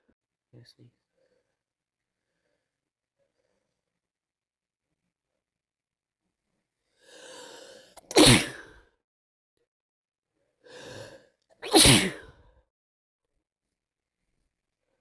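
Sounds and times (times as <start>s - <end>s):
gasping in-breath: 6.9s - 8.9s, 10.6s - 12.5s
person sneezing: 8.0s - 8.8s, 11.6s - 12.4s.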